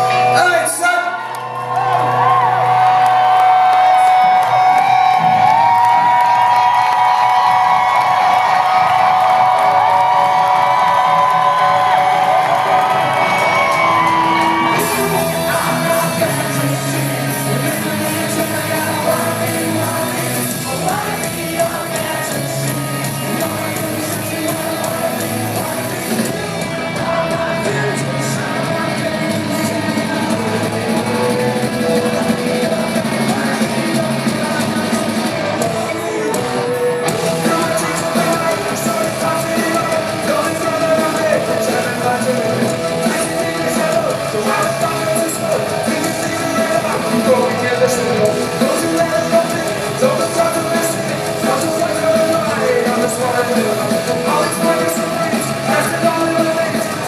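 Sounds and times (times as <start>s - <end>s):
live rock band playing: 0.0s - 57.0s
person singing: 3.4s - 57.0s.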